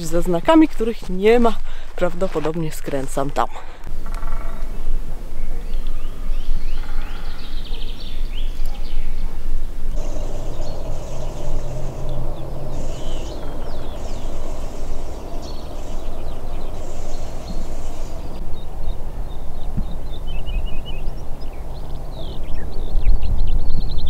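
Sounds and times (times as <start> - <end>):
songbirds chirping: 0.0 - 24.0
loud steady low rumble: 10.0 - 18.4
low steady hum: 10.0 - 18.7.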